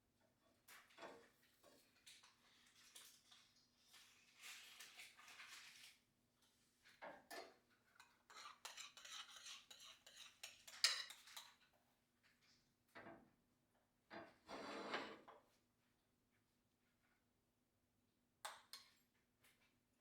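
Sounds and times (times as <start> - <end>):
cutlery clinking against dishes: 8.0 - 11.6.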